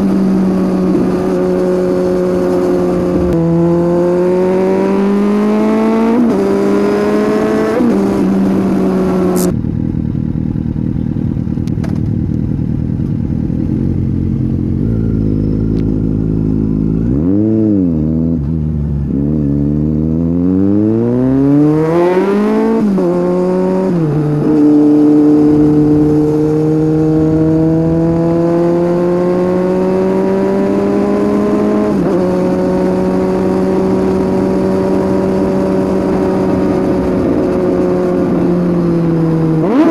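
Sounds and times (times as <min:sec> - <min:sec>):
motorcycle engine accelerating: 0:00.0 - 0:39.9.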